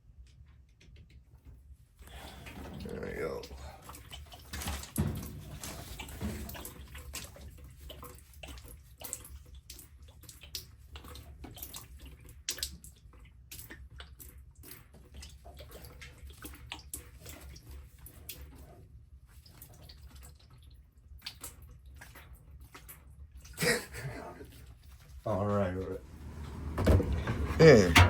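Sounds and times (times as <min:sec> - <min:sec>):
water dripping and trickling: 0:02.1 - 0:23.6
steady low hum: 0:25.8 - 0:28.0.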